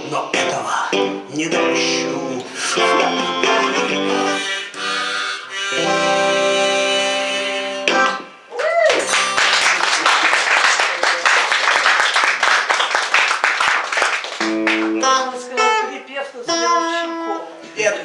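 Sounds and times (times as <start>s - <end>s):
pitched instrument notes: 0.0s - 10.0s, 14.4s - 18.0s
held musical chord: 0.5s - 8.3s
audience applauding: 8.6s - 15.0s.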